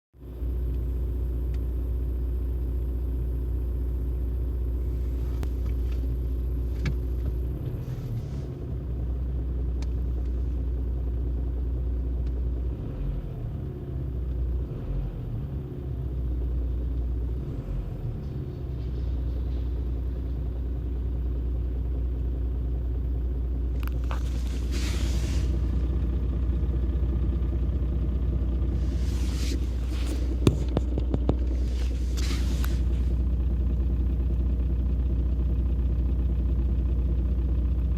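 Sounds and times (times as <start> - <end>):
diesel engine running: 0.2 - 37.9
rustling noise: 24.0 - 25.8, 28.8 - 33.2.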